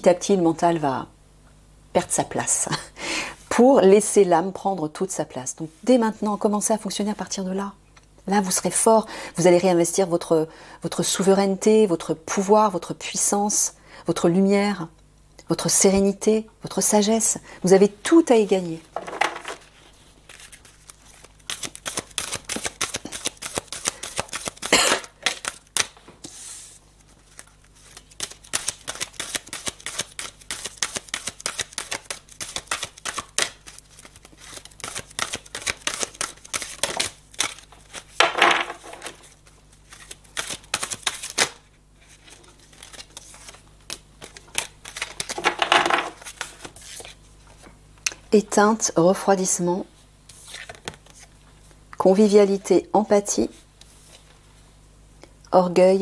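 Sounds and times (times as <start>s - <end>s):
cards being shuffled: 18.9s - 47.7s, 50.3s - 51.3s.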